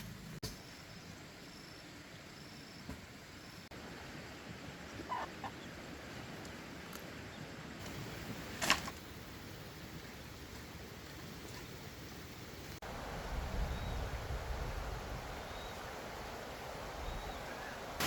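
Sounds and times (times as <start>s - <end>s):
faint steady hiss: 0.0s - 18.0s
chickens clucking: 5.0s - 5.7s.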